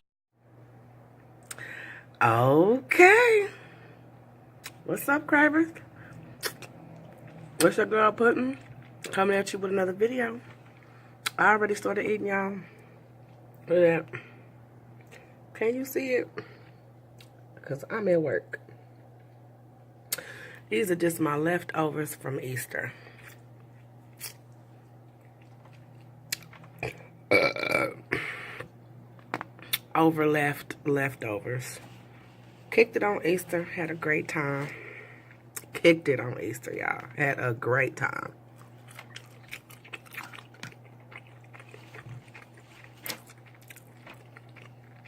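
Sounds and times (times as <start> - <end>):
steady low hum: 0.4 - 45.0
wet chewing and mouth smacks: 6.1 - 9.3, 23.2 - 27.1, 38.5 - 45.0
person burping: 26.8 - 28.4.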